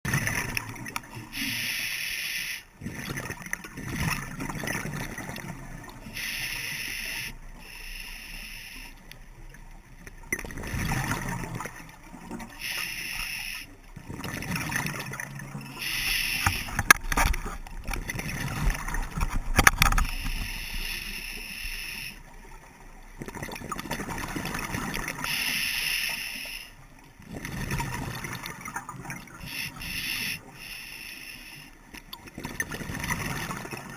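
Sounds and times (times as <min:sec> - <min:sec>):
regulator inhalation hiss: 0:01.4 - 0:02.7, 0:06.1 - 0:09.0, 0:12.6 - 0:13.7, 0:15.8 - 0:16.8, 0:20.2 - 0:22.2, 0:25.3 - 0:26.8, 0:29.4 - 0:31.8
exhaled bubbles rumbling: 0:09.6 - 0:12.6, 0:16.4 - 0:20.5, 0:27.2 - 0:29.5.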